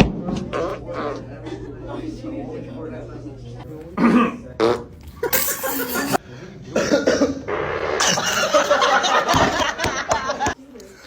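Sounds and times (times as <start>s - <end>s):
person fake coughing: 4.0s - 4.5s, 5.3s - 7.4s.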